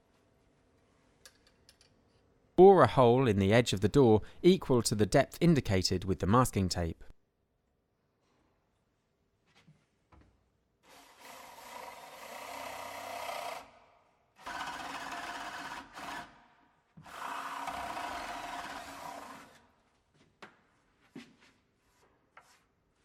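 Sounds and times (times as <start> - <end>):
power drill boring into wood: 10.9 - 13.7, 14.4 - 16.3, 17.0 - 19.6.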